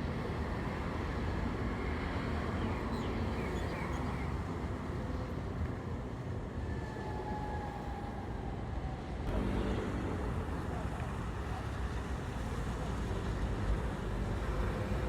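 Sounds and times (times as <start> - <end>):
boat engine low rumble: 3.2 - 15.0.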